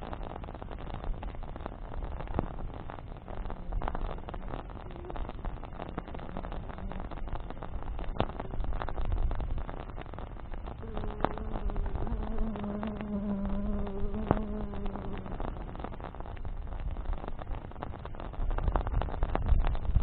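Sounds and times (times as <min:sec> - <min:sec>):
campfire crackling and popping: 0:00.0 - 0:20.0
flying insect buzzing: 0:10.8 - 0:16.0.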